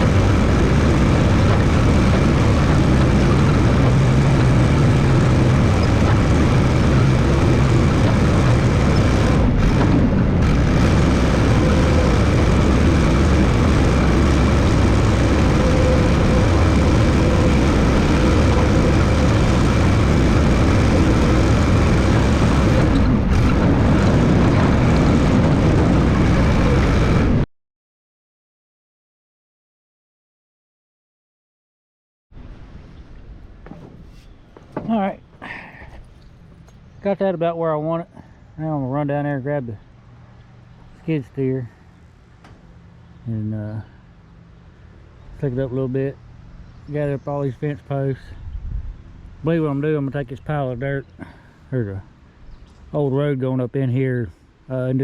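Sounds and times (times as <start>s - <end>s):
dozer engine running: 0.0s - 27.4s, 33.2s - 48.2s.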